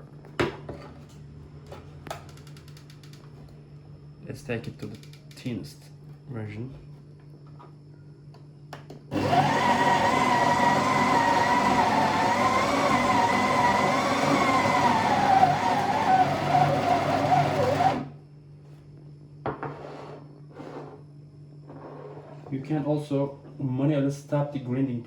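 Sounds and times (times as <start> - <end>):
coffee grinder grinding beans: 9.1 - 18.1.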